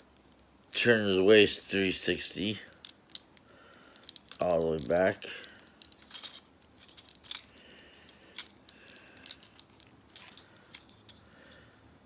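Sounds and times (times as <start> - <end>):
soft handling noise: 0.0 - 12.0
plastic toy parts clicking: 2.7 - 11.2.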